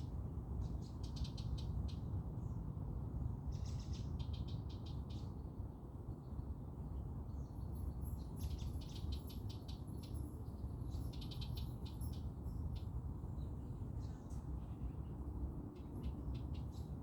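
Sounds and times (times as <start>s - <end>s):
small birds chirping trills: 7.3s - 15.2s.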